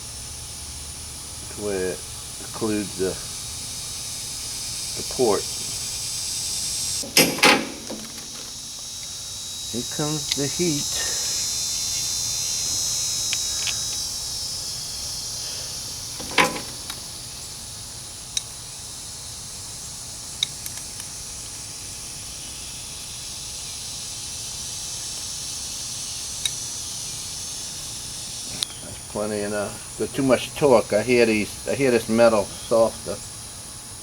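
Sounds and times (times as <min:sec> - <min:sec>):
insects chirring: 0:00.0 - 0:34.0
metal clicks on tank: 0:07.0 - 0:08.8, 0:16.2 - 0:17.1.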